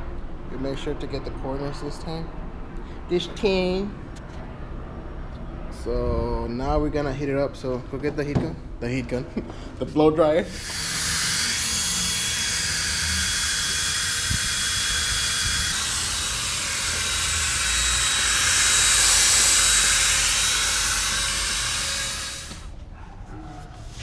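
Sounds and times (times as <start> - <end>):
hair dryer running: 10.5 - 22.7.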